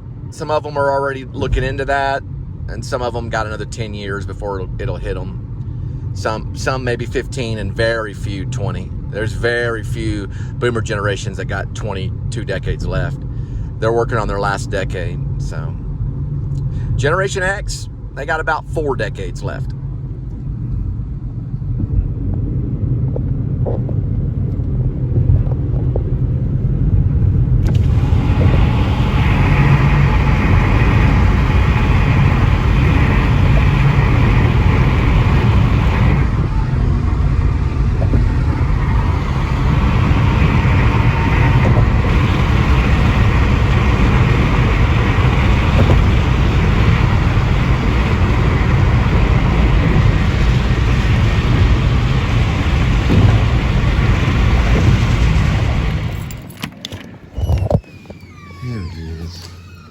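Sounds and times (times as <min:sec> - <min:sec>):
car road and engine rumble: 0:00.0 - 0:59.9.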